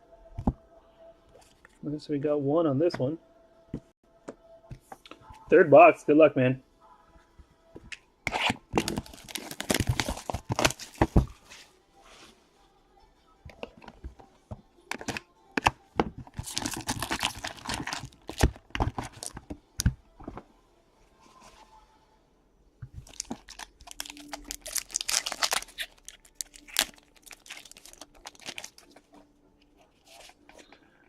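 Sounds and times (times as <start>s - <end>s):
plastic wrapping tearing and crinkling: 8.3s - 11.0s, 16.3s - 19.4s, 23.0s - 29.1s.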